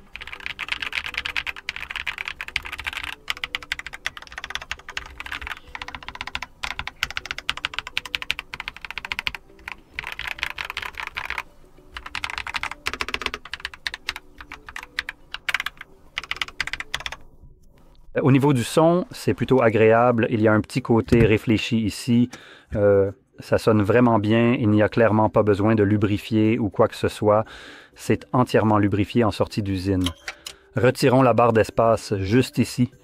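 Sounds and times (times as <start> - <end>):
mechanical keyboard typing: 0.0 - 17.2.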